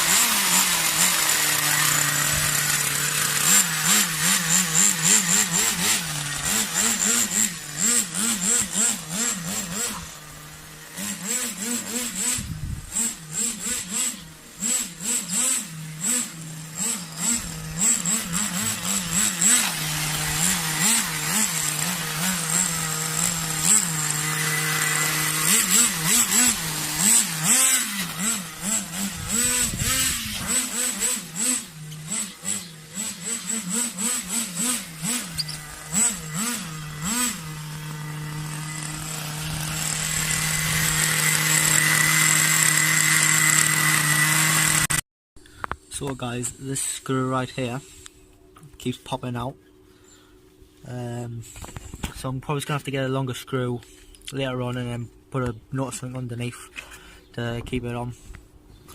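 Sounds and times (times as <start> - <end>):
rc car engine revving: 0.0 - 45.0.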